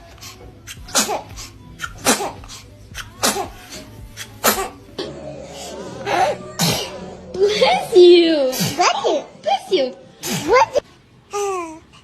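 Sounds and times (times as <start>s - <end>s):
baby sneezing: 0.7s - 4.8s, 6.6s - 7.1s, 8.5s - 9.1s, 10.2s - 10.8s.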